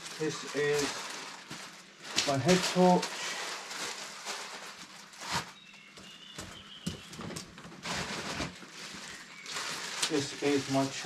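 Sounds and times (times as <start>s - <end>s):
hiking kit rustling and knocking: 5.8s - 9.1s.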